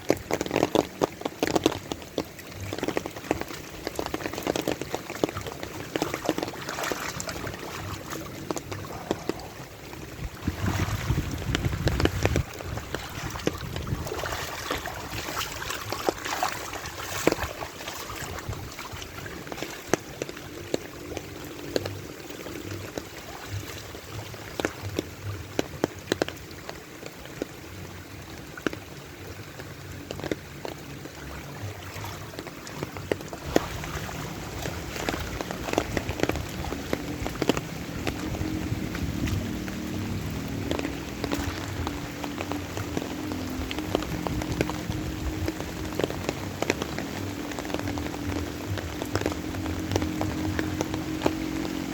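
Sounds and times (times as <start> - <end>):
steady rain: 0.0 - 51.9.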